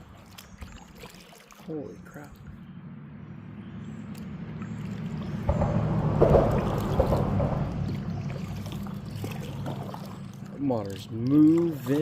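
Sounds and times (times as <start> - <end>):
creek water rushing and splashing: 0.0 - 3.1, 4.0 - 12.0
small knocks: 5.4 - 9.0.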